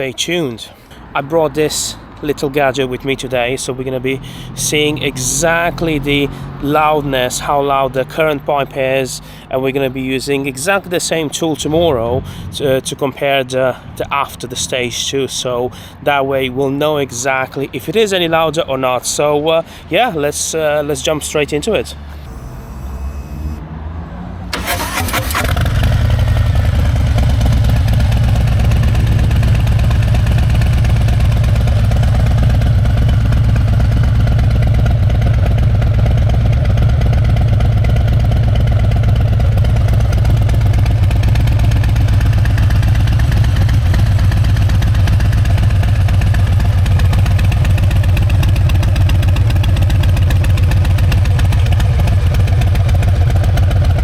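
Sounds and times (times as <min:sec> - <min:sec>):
motorcycle engine cranking: 0:22.1 - 0:23.6, 0:24.5 - 0:54.0
motorcycle engine idling: 0:24.5 - 0:54.0.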